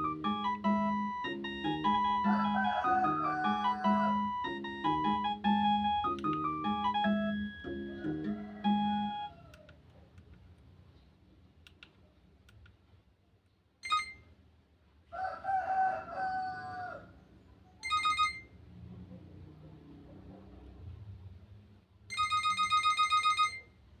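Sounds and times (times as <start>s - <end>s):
electronic chime ringtone: 0.0s - 9.3s, 13.8s - 14.2s, 17.8s - 18.5s, 22.1s - 23.6s
recorded rooster crow: 2.1s - 4.6s, 7.7s - 9.8s, 15.1s - 17.3s.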